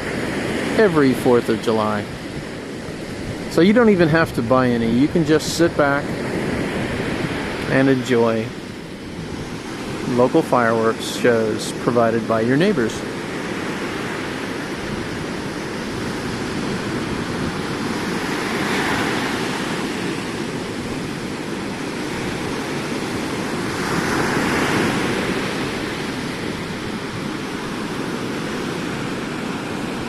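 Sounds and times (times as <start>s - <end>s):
ocean surf washing on beach: 0.0s - 30.0s.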